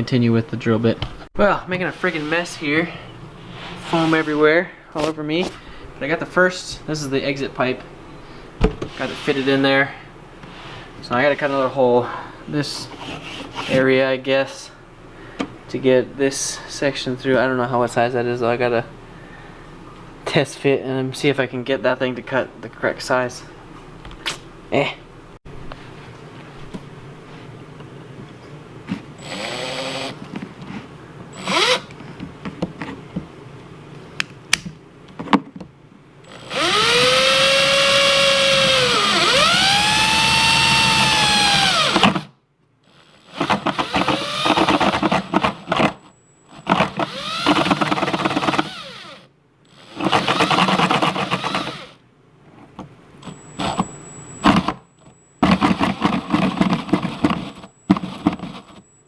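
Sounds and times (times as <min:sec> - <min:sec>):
power drill cutting plastic and foam: 0:29.2 - 0:30.2, 0:31.4 - 0:31.9, 0:36.3 - 0:42.3, 0:42.9 - 0:52.0, 0:53.2 - 0:54.8, 0:55.4 - 0:58.8.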